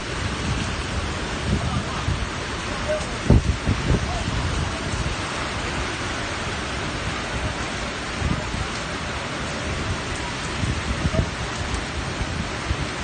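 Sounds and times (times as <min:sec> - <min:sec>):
heavy rain: 0:00.0 - 0:13.0
strong wind gusts: 0:00.0 - 0:13.0.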